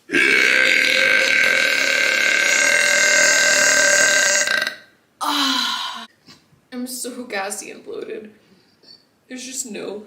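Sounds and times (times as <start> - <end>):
woman burping: 0.1 - 6.1.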